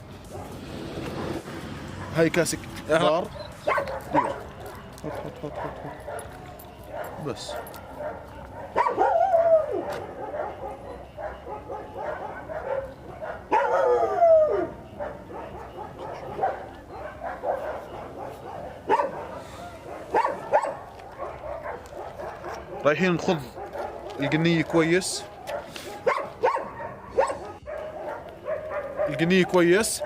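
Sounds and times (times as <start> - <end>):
dog yipping: 3.3 - 24.4, 25.3 - 29.8
dog whining: 8.8 - 20.8.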